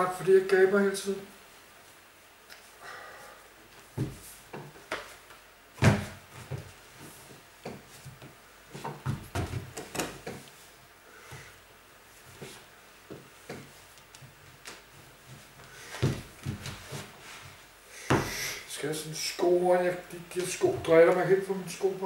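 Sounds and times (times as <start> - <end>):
knocks and clatter of handling: 7.6 - 10.5.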